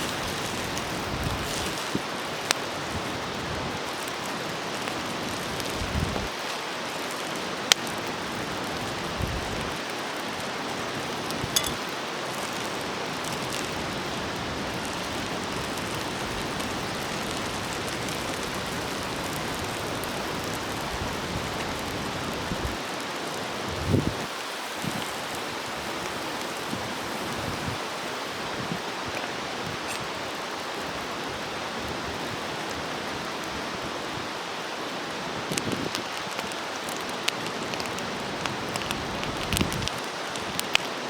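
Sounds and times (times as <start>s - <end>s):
food sizzling on a griddle: 0.0s - 34.3s
sharp pops and crackles: 35.5s - 41.0s.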